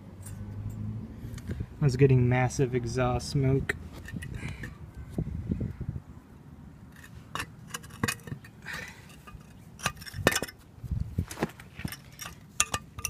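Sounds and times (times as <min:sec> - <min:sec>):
metal parts clinking: 0:07.0 - 0:10.6, 0:11.6 - 0:13.0.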